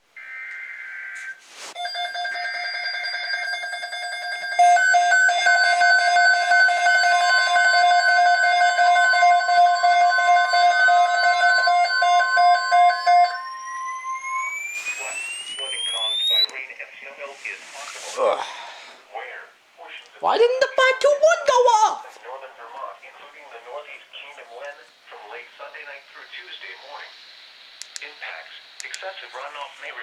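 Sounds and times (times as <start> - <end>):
weather radio alarm beeping: 0.2 - 16.6
tones rising in pitch: 1.8 - 16.5
steady tone: 3.3 - 16.5
data burst screech: 10.2 - 16.5.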